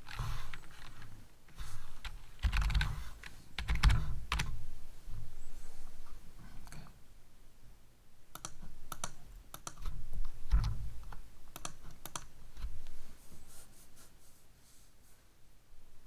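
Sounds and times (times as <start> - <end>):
typing on computer keyboard: 2.0 - 3.0, 3.6 - 4.6, 8.4 - 12.3.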